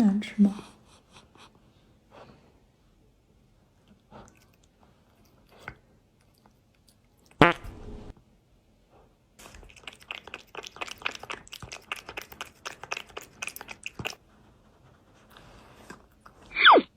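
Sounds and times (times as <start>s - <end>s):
cat crunching dry kibble: 9.4s - 14.2s.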